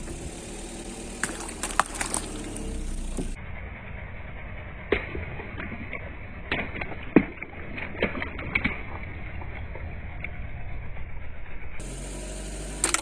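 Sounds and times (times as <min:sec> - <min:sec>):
engine rumble: 0:00.0 - 0:13.0
objects cracking under a tyre: 0:01.2 - 0:03.4, 0:12.8 - 0:13.0.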